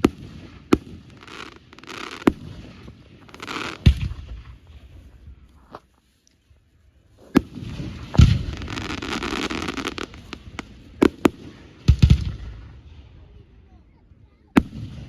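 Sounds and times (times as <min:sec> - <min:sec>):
fireworks banging: 0:00.0 - 0:04.9, 0:07.2 - 0:12.5
fireworks crackling: 0:00.0 - 0:05.9, 0:07.1 - 0:12.5.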